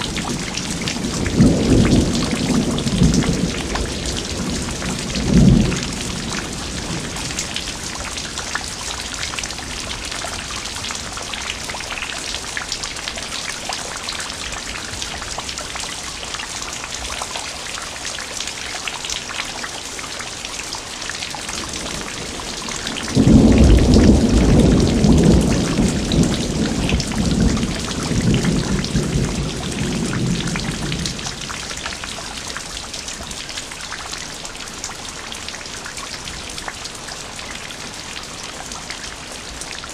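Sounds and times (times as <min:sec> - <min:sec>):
heavy rain: 0:00.0 - 0:39.9
thunder clap rumbling: 0:21.6 - 0:31.4.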